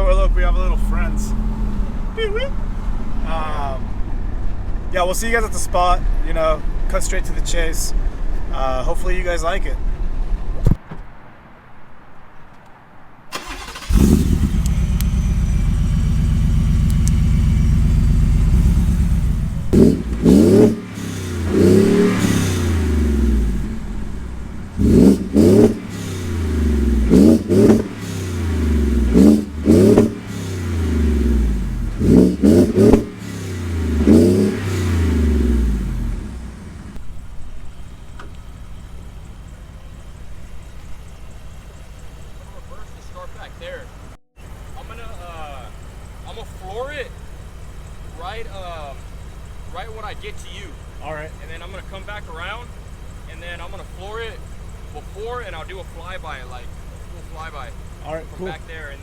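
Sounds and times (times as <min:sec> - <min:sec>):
truck engine revving: 0:00.0 - 0:04.1, 0:13.4 - 0:59.0.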